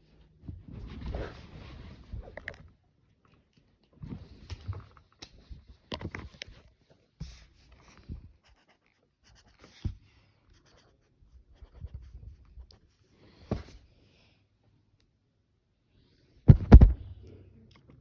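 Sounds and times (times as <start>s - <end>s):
colouring strokes on paper: 7.2s - 12.7s.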